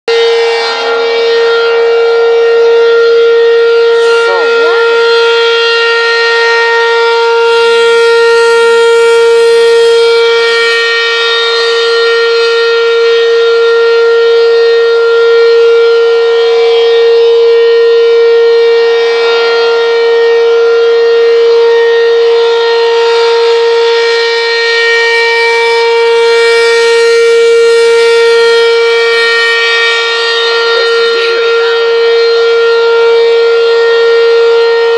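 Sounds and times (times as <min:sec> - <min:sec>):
tornado siren steady tone: 0:00.0 - 0:34.9.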